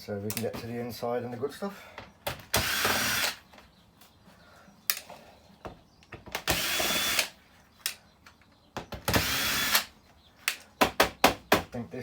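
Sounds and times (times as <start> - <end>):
drill motor whine: 6.5 - 7.3, 9.2 - 9.8.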